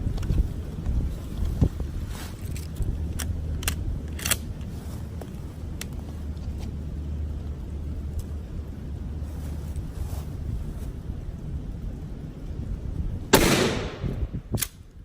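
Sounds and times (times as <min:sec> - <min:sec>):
light metallic clicks and rattles: 0:00.0 - 0:06.8, 0:14.5 - 0:15.0
wind rumbling on microphone: 0:00.0 - 0:15.0.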